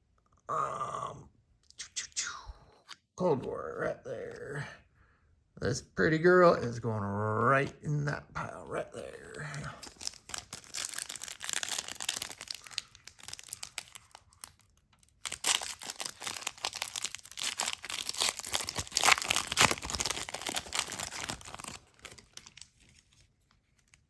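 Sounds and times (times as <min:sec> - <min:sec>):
wrapper tearing and crinkling: 0:09.2 - 0:24.0.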